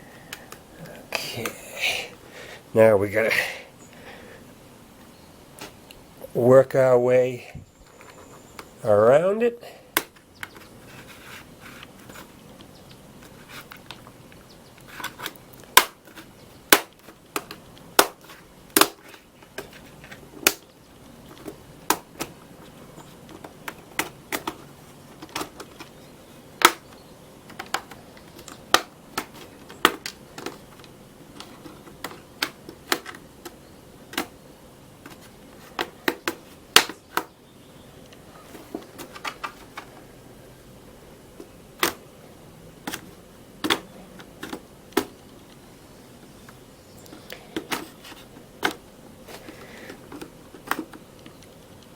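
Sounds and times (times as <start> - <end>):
plastic clips snapping loose: 15.0 - 20.7, 21.3 - 22.4, 26.6 - 34.4, 35.0 - 37.3, 41.8 - 42.0, 42.8 - 45.2.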